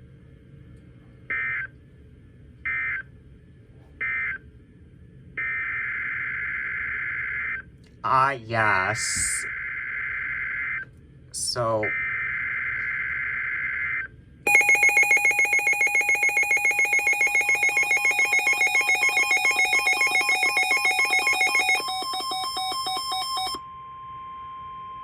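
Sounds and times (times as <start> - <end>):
steady warning tone: 8.3 - 25.0
electronic alarm beeping rapidly: 11.8 - 23.7.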